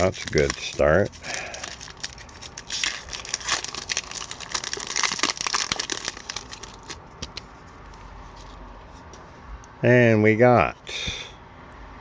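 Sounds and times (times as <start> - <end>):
card pack wrapper crinkling: 0.0 - 7.4.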